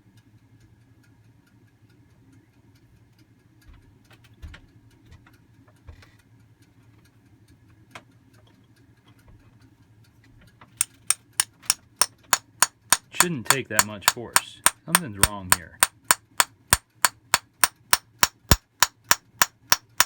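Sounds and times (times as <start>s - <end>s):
metal parts clicking: 10.8s - 20.0s
tool tapping on metal: 10.8s - 20.0s.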